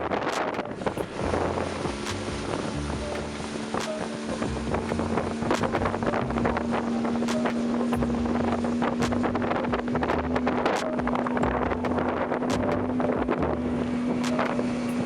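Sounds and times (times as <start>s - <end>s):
wind on microphone: 0.0s - 15.0s
outboard motor running: 0.9s - 15.0s.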